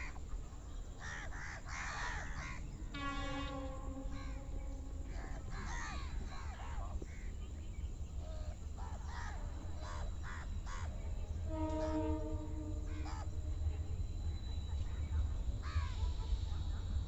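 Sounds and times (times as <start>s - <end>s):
crows cawing: 1.0s - 2.6s, 3.4s - 7.3s, 8.8s - 10.9s
steady low rumble: 2.6s - 11.5s, 12.2s - 17.0s
steady pitched tone: 3.0s - 6.3s.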